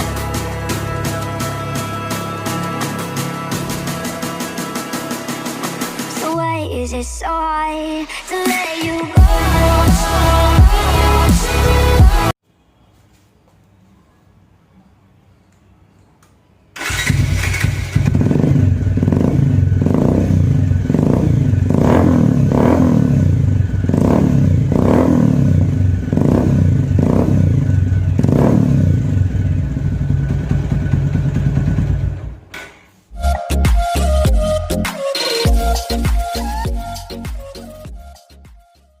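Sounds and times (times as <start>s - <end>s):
motorcycle engine revving: 16.8s - 32.5s.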